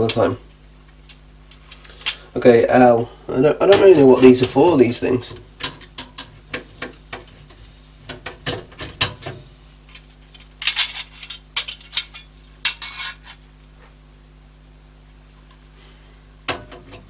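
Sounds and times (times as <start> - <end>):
clicks and knocks of pc case parts: 3.7 - 12.8, 16.5 - 17.0
rattling and scraping: 9.9 - 13.5.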